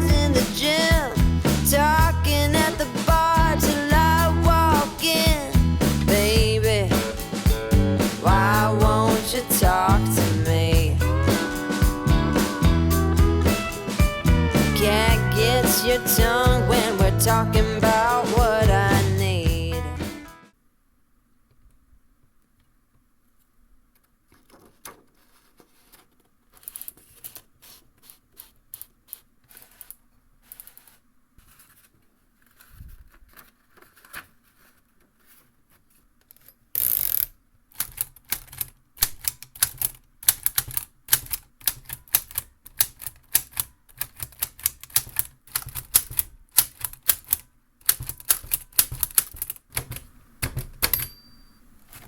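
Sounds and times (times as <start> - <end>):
typewriter keys clacking: 37.8 - 51.3
typewriter clunk: 44.5 - 52.0.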